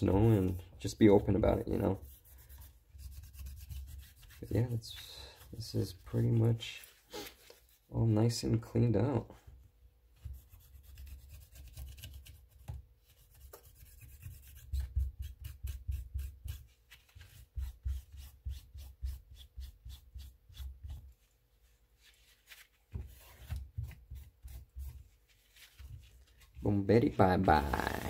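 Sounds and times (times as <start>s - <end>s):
quick rubbing strokes: 27.4s - 28.0s.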